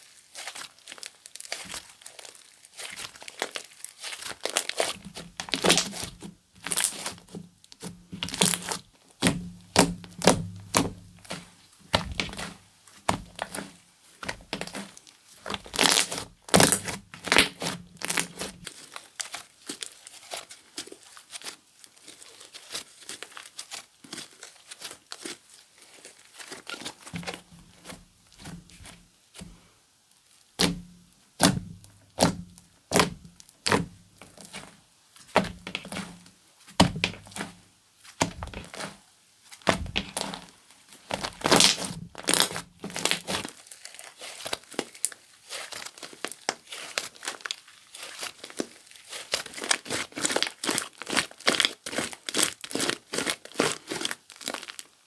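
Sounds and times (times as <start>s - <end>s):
slime crackling and popping: 0.3s - 20.3s, 30.6s - 34.7s, 35.3s - 39.0s, 39.6s - 54.9s.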